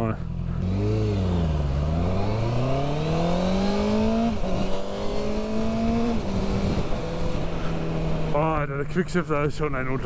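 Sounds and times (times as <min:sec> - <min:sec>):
motorcycle engine accelerating: 0:00.2 - 0:08.6
wind noise: 0:02.2 - 0:08.6.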